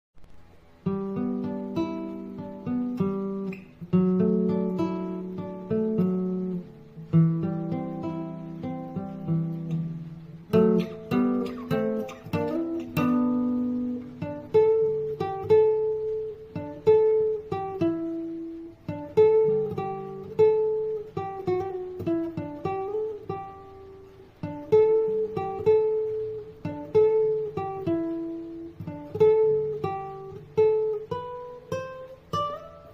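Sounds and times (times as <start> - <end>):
plucked acoustic guitar melody: 0.2 - 32.9.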